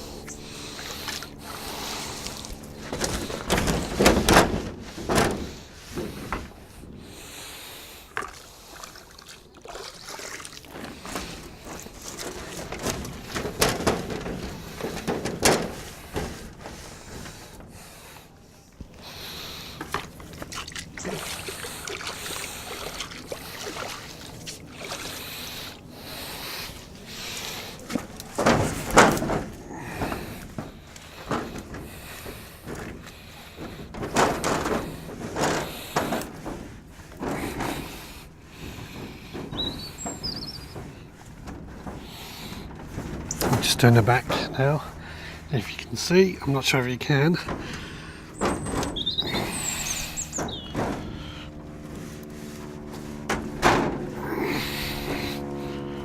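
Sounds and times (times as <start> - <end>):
scrubbing and wiping: 0.0 - 56.0
water sloshing and splashing: 0.0 - 56.0
knocks against structure: 53.1 - 54.2.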